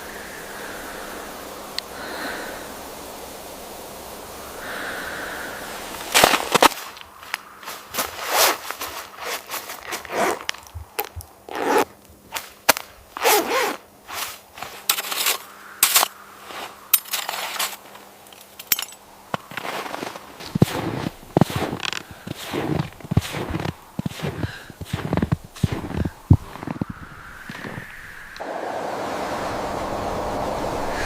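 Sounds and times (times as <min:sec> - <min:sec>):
handling scrapes and rustles: 0:05.9 - 0:27.9.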